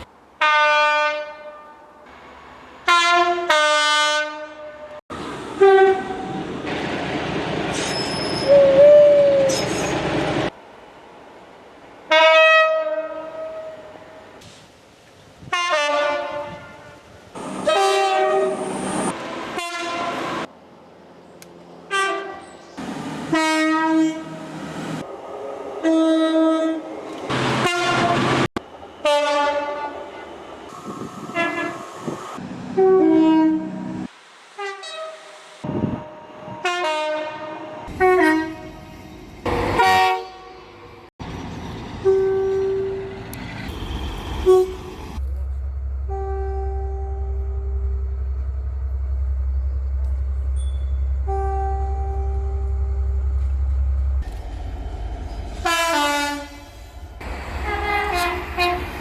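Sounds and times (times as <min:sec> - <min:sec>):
train horn blasts: 0:00.4 - 0:02.1, 0:02.8 - 0:05.0, 0:05.6 - 0:06.4, 0:12.1 - 0:14.1, 0:15.4 - 0:17.0, 0:17.6 - 0:20.5, 0:21.9 - 0:22.5, 0:23.3 - 0:24.4, 0:25.8 - 0:26.8, 0:27.6 - 0:30.3, 0:31.2 - 0:31.9, 0:32.7 - 0:35.3, 0:36.0 - 0:40.8, 0:42.0 - 0:43.0, 0:43.6 - 0:45.2, 0:46.0 - 0:49.0, 0:50.6 - 0:53.5, 0:55.6 - 0:59.0.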